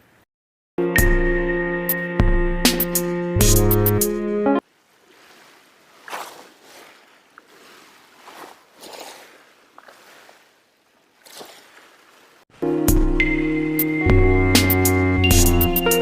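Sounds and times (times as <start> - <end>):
background music: 0.8 - 4.6, 12.6 - 16.0.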